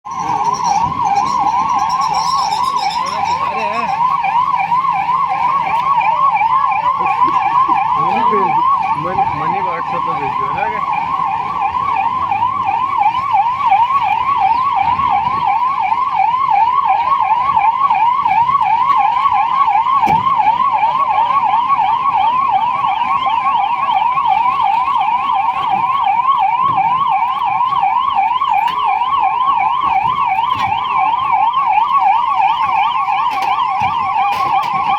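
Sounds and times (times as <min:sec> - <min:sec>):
ambulance siren yelping: 0:00.0 - 0:34.9.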